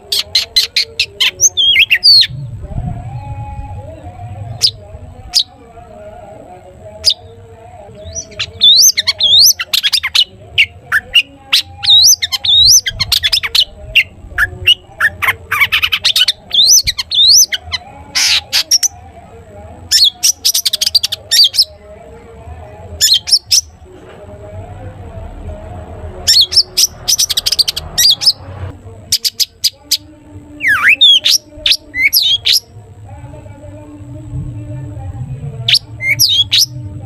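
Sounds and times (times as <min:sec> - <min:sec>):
bird chirping and whistling: 0:00.2 - 0:02.4, 0:08.0 - 0:13.7, 0:14.4 - 0:18.9, 0:26.3 - 0:28.4, 0:30.6 - 0:32.6, 0:35.7 - 0:36.7.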